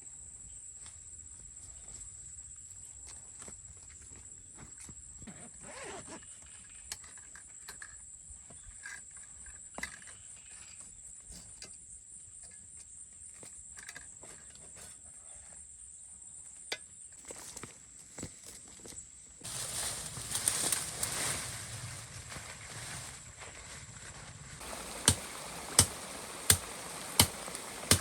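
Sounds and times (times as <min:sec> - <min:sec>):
knocks and rustles of handiwork: 0:24.6 - 0:28.0.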